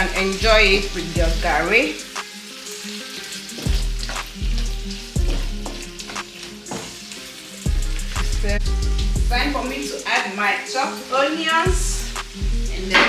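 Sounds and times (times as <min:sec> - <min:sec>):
background music: 0:00.0 - 0:13.0
vegetables sizzling in a pot: 0:00.0 - 0:13.0
spoon stirring and scraping: 0:02.9 - 0:07.2.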